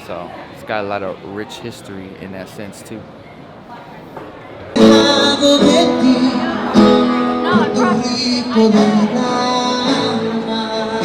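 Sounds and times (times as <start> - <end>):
instrumental music: 4.8 - 11.0
person singing long notes: 4.8 - 11.0.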